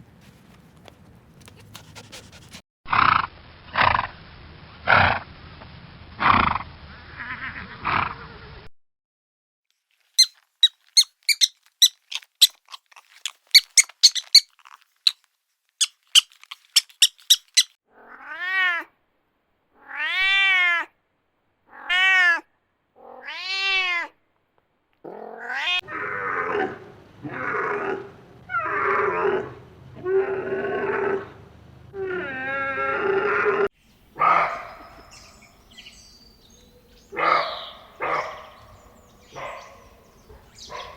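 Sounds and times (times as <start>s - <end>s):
high squeaks: 10.2s - 15.2s, 15.8s - 17.8s
cat meowing: 21.7s - 22.4s, 23.0s - 24.1s.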